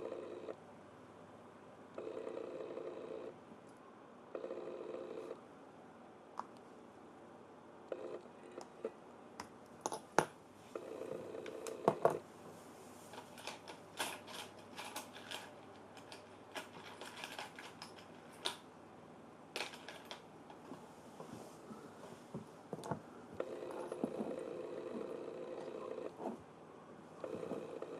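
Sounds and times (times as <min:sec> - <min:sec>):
small tools clicking and scraping: 0:13.1 - 0:18.6.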